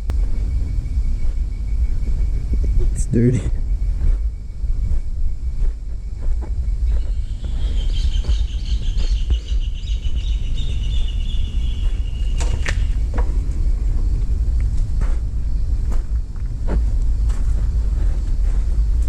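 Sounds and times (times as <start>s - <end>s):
wind rumbling on microphone: 0.0s - 19.0s
bird chirping: 6.7s - 13.1s.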